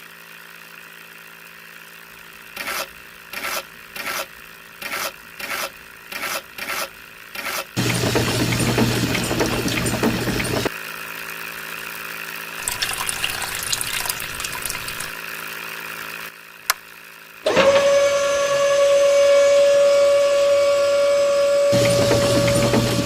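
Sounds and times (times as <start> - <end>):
small electric motor whining: 17.4 - 23.0.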